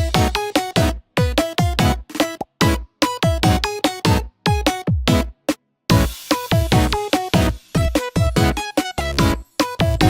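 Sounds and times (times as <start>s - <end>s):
electronic synth music: 5.9s - 10.0s.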